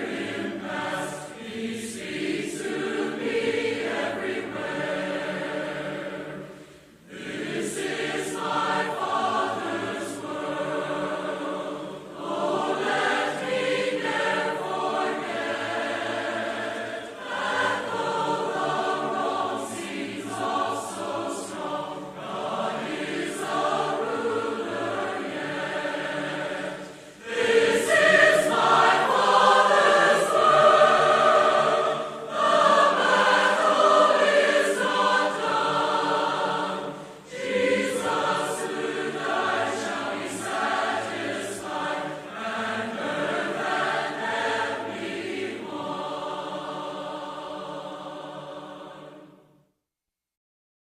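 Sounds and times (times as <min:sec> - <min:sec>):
choir singing sustained notes: 0:00.0 - 0:49.8.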